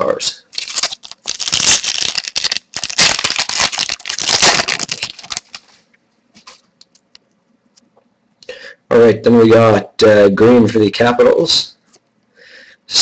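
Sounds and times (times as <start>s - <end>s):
crackly rustling of packaging: 0.5s - 7.2s.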